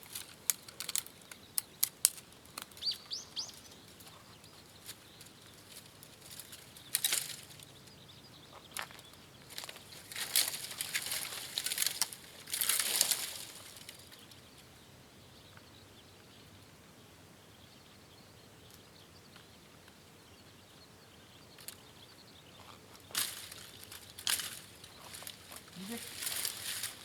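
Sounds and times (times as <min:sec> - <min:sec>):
dry twigs rustling and crackling: 0:00.0 - 0:14.7, 0:22.6 - 0:27.0
faint outdoor hiss: 0:00.0 - 0:27.0.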